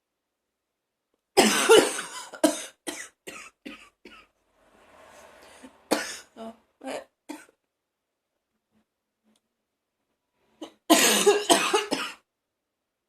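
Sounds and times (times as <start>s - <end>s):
woman coughing and gagging: 1.4s - 4.3s, 5.9s - 6.3s, 7.3s - 7.6s, 10.6s - 12.2s.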